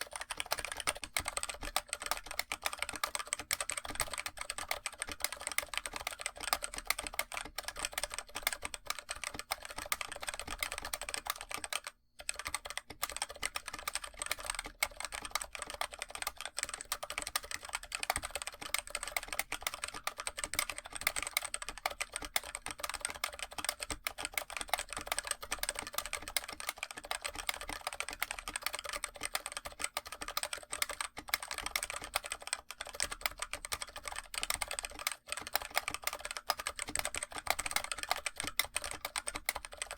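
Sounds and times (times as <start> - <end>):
typing on mechanical keyboard: 0.0 - 39.9.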